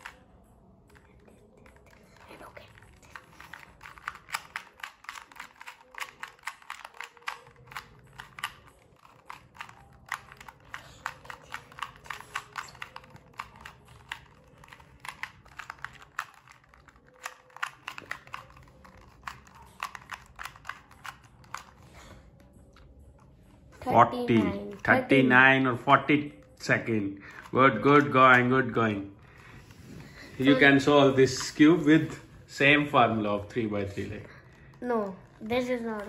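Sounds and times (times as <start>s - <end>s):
puzzle cube plastic clicks: 0.0s - 23.3s, 27.2s - 29.5s.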